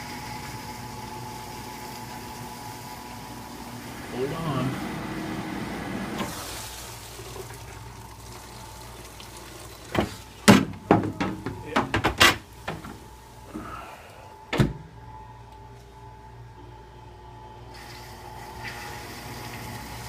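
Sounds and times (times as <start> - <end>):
dishwasher faint hum: 0.0 - 20.0
sharp knocks and clunks: 10.0 - 13.0.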